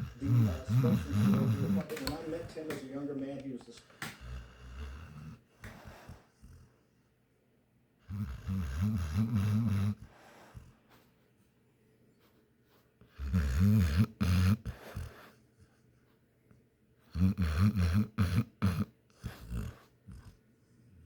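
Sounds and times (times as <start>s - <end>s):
dog breathing quietly: 0.0s - 2.6s, 3.8s - 7.1s, 9.2s - 11.5s, 12.1s - 16.3s, 17.0s - 21.0s
dog snoring: 0.0s - 2.7s, 3.9s - 6.8s, 8.0s - 11.0s, 13.1s - 15.4s, 17.0s - 20.4s.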